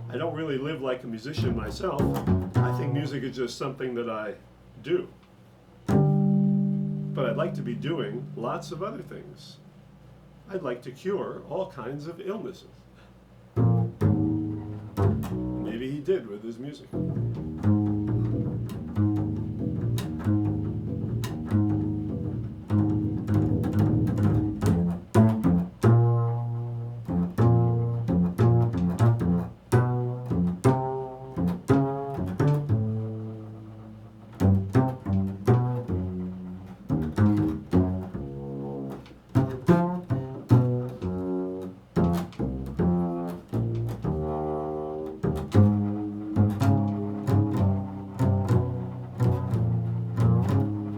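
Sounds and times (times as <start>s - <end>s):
double bass playing: 0.0s - 3.6s, 5.7s - 10.4s, 13.4s - 50.9s.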